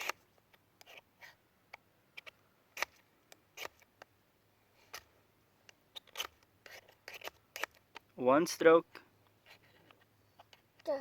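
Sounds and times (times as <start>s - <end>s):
fire striker scraping: 3.6s - 3.9s, 5.9s - 8.1s.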